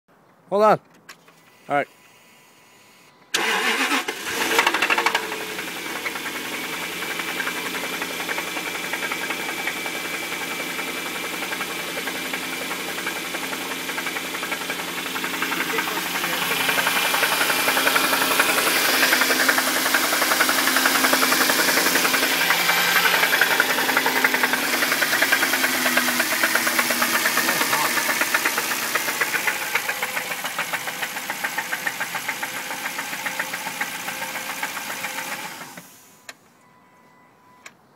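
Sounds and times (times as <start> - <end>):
car engine cranking and running: 3.3 - 36.4
rapid engine knocking: 4.4 - 35.6.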